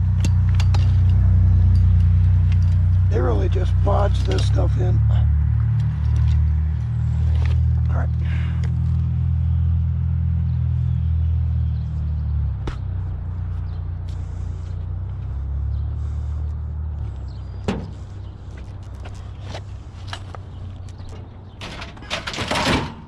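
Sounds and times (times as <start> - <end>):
vehicle engine idling: 0.0 - 23.0
scrap metal knocks: 17.6 - 18.2.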